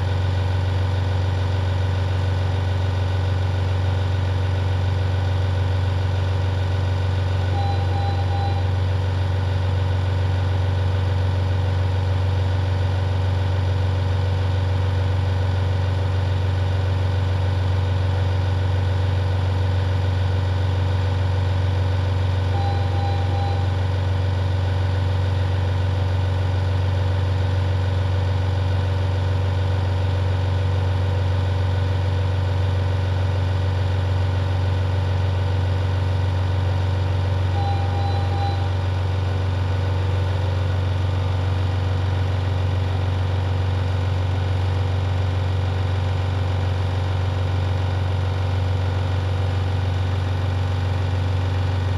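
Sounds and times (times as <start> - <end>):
low machine hum: 7.4 - 9.0, 22.5 - 24.0, 37.4 - 39.8
short high beep: 7.5 - 8.8, 22.6 - 23.8, 37.6 - 38.8.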